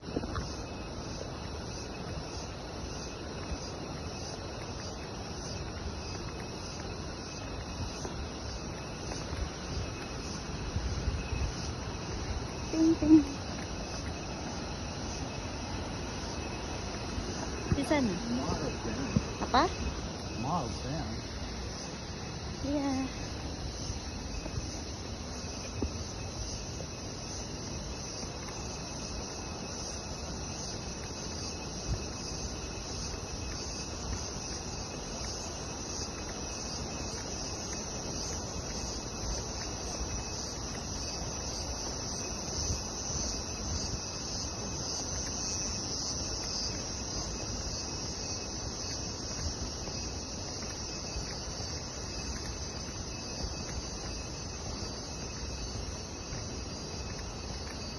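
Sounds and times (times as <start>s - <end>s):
insects chirring: 0.0s - 57.9s.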